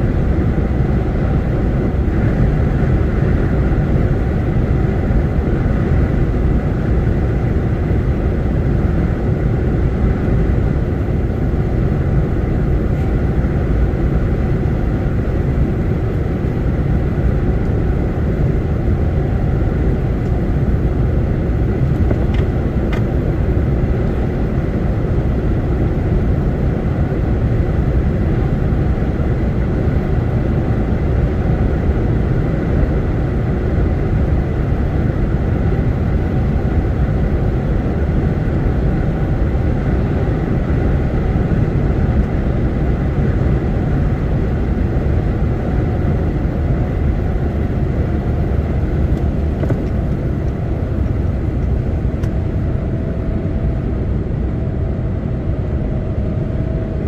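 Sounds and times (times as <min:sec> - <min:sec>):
lorry engine and road noise: 0:00.0 - 0:57.0.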